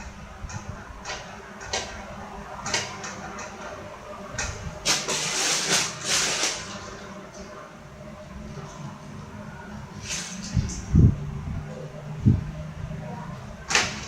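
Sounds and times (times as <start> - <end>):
objects scraping: 4.9 - 7.0.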